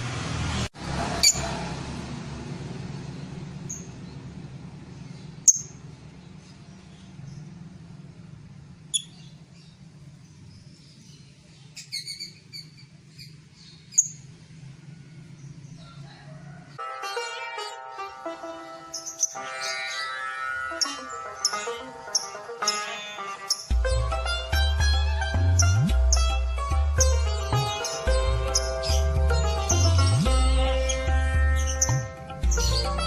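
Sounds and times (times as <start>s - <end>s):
bird chirping: 3.1s - 16.2s, 17.8s - 33.0s.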